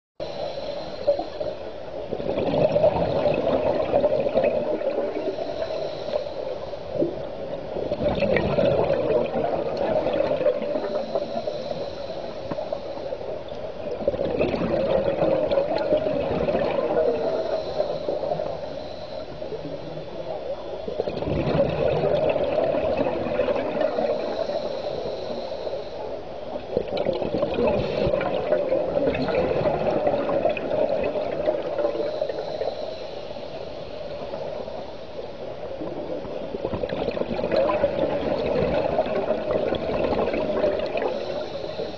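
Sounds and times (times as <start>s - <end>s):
diver breathing through regulator: 0.2s - 1.8s, 2.4s - 7.2s, 8.2s - 13.4s, 14.6s - 26.5s, 27.5s - 35.5s, 38.3s - 41.9s
underwater bubbles gurgling: 0.2s - 41.9s.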